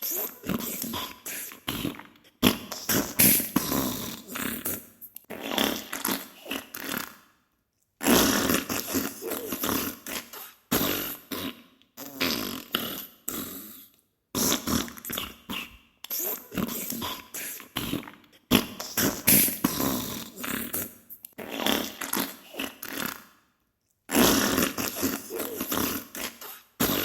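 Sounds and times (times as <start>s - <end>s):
sputtering fart bursts: 0.0s - 7.2s, 8.0s - 13.6s, 17.8s - 23.3s, 24.1s - 27.0s.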